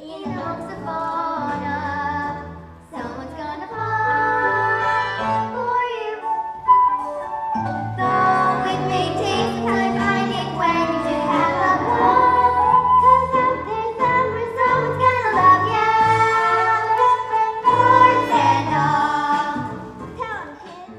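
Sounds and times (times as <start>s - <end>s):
instrumental accompaniment: 0.2s - 20.9s
children singing: 3.0s - 6.4s, 8.0s - 19.8s.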